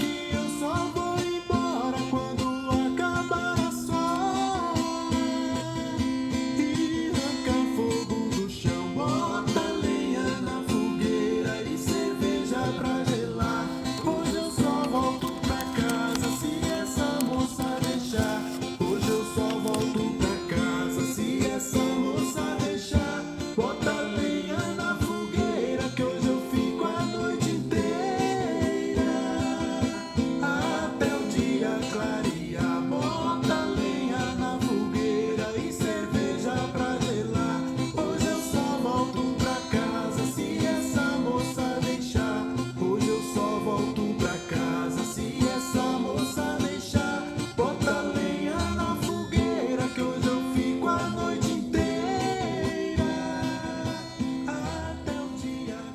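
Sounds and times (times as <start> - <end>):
person singing: 6.7 - 55.9
guitar playing: 9.6 - 32.1.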